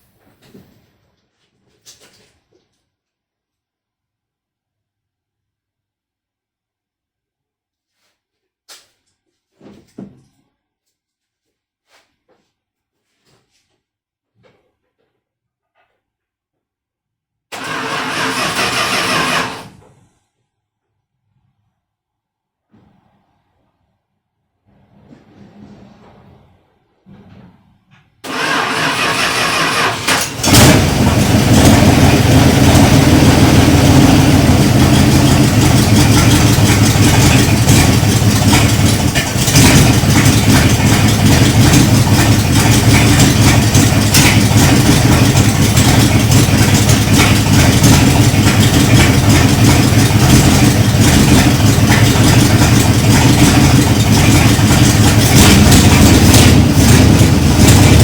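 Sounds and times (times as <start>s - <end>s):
starter cranking engine: 17.5s - 19.8s, 28.2s - 58.0s
engine idling: 28.3s - 58.0s.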